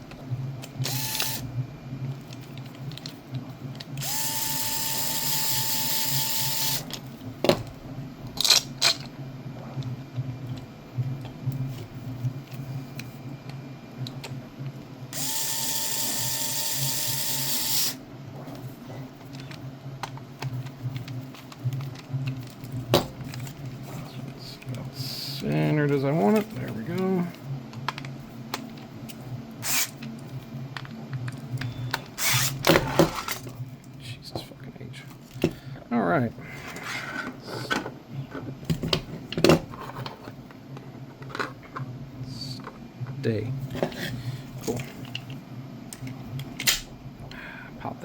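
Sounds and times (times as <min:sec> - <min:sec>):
power drill running: 0:00.8 - 0:01.5, 0:04.0 - 0:06.9, 0:15.1 - 0:18.0, 0:29.6 - 0:30.0, 0:32.2 - 0:32.6.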